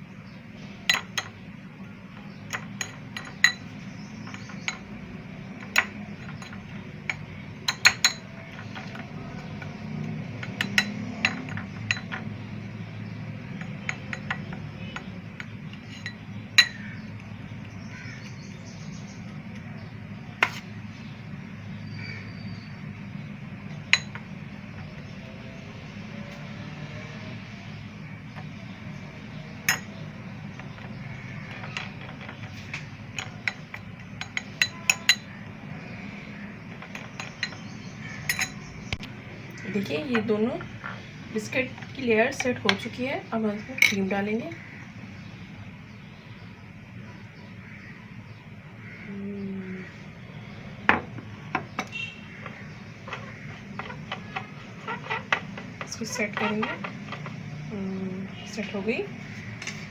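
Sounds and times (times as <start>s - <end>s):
spoon clinking against bowls: 0.9s - 1.5s, 2.1s - 18.4s, 23.7s - 25.2s, 29.2s - 39.1s, 43.7s - 44.7s, 50.9s - 57.7s.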